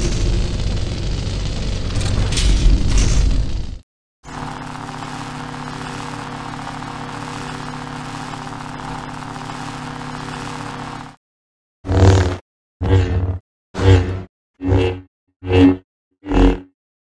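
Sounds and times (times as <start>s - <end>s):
lightsaber electric hum: 0.0s - 11.2s, 13.8s - 16.6s.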